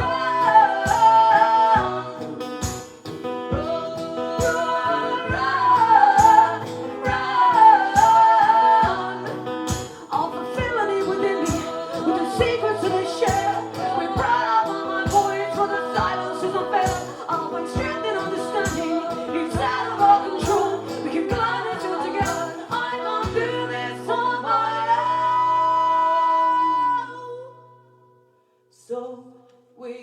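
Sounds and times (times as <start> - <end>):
wordless singing: 0.0 - 27.5
drum beat thumping: 0.9 - 2.0.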